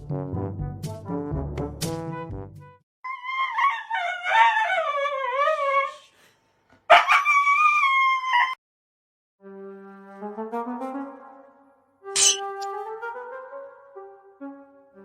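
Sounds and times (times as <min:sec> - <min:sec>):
dog howling: 0:03.1 - 0:06.0, 0:06.9 - 0:08.6.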